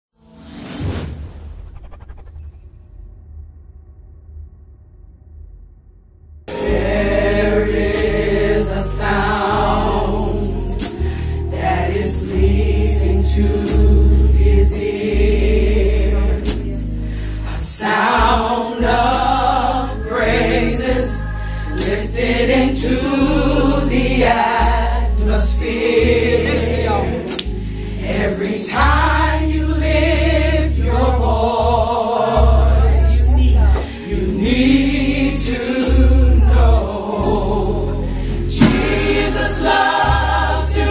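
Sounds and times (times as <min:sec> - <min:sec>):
gospel choir singing: 0:06.5 - 0:40.9
loud bass notes: 0:18.2 - 0:40.9
steady drum beat: 0:38.5 - 0:40.9.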